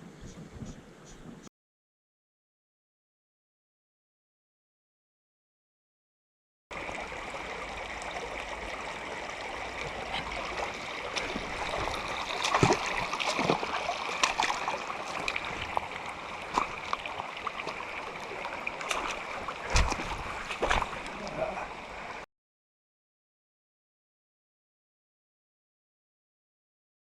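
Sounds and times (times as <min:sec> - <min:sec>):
stream rushing over rocks: 0:06.8 - 0:22.2.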